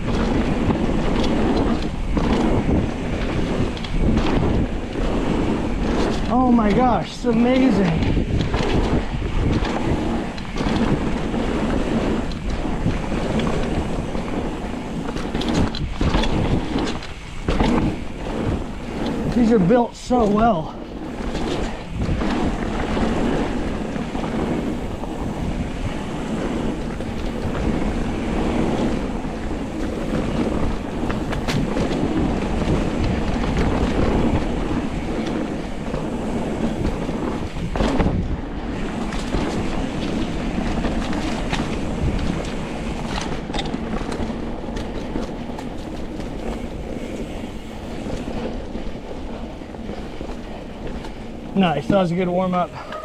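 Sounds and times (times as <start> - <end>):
bike knocking over bumps: 0.0 - 19.6, 20.2 - 51.2
bike tyres rolling on dirt: 0.0 - 53.0
wind rushing over microphone: 0.0 - 53.0.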